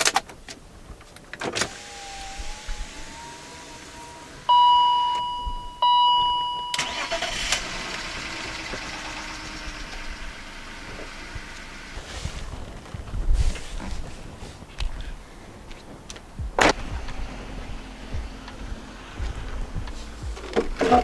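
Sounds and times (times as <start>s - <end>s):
car engine cranking and idling: 0.0s - 21.0s
electronic chime tones: 4.5s - 7.2s.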